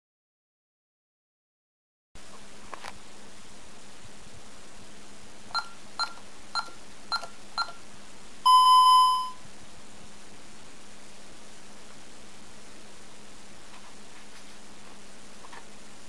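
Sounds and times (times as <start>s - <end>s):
alarm keypad beeping: 5.6s - 7.8s, 8.5s - 9.4s
long loud beep: 8.5s - 9.4s.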